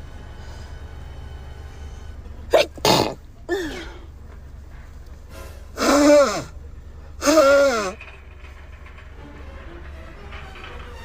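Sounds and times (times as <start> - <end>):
woman sneezing: 2.5 - 4.0.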